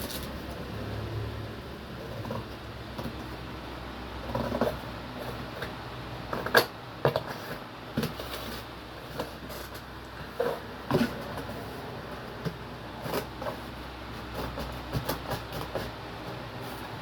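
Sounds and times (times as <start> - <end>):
scissors snipping cardboard: 14.2 - 16.0.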